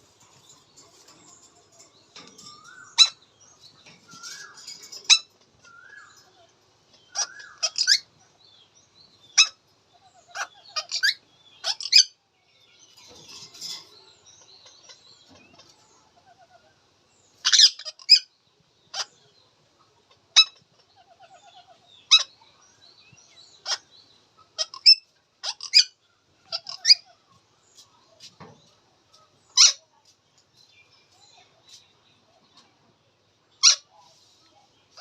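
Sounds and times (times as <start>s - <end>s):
parakeet chirping: 2.2s - 6.4s, 7.0s - 8.1s, 10.3s - 12.1s, 17.4s - 18.2s.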